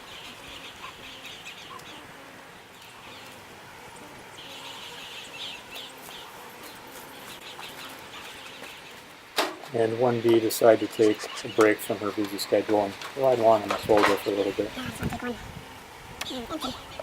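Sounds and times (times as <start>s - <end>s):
birds chirping: 0.0s - 17.0s
honeybees humming: 0.0s - 17.0s.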